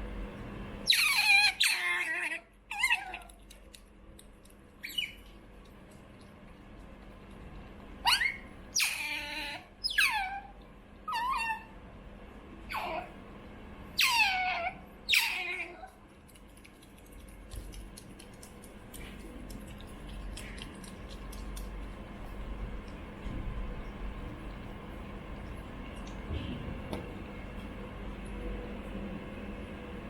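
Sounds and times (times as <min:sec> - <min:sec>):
otter squeaky calls: 0:00.9 - 0:02.1, 0:04.8 - 0:05.2, 0:08.1 - 0:10.3.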